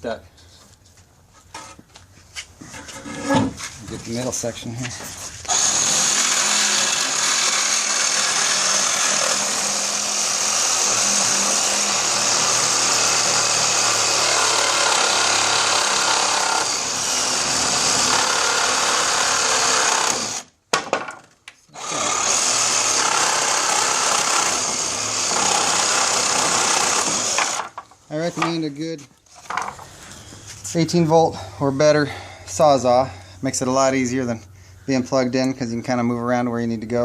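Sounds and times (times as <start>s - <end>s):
reciprocating saw cutting nails: 5.5s - 20.5s.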